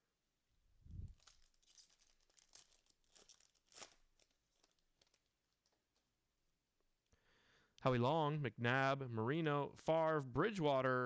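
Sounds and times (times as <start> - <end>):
wrapper crinkling and tearing: 1.0 - 6.1.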